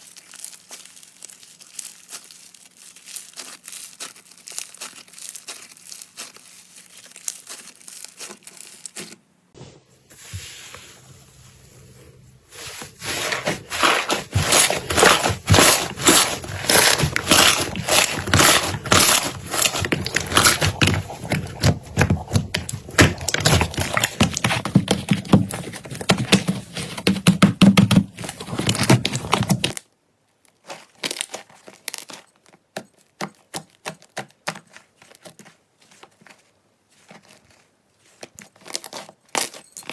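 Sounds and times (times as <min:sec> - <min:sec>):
slime crackling and popping: 0:00.0 - 0:09.2, 0:13.8 - 0:25.2.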